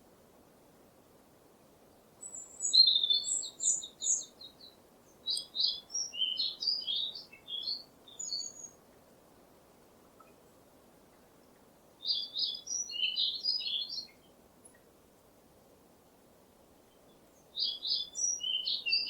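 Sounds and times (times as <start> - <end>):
faint steady hiss: 0.0 - 19.0
songbird singing trills and warbles: 2.2 - 9.0, 11.1 - 14.9, 16.8 - 19.0.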